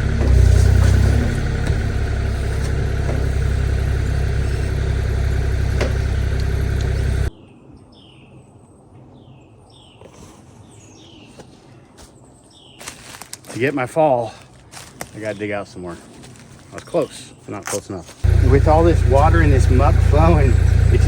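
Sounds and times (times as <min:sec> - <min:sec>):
birds chirping: 0:00.0 - 0:07.3, 0:18.2 - 0:21.0
diesel engine rumbling: 0:00.0 - 0:07.3, 0:18.2 - 0:21.0.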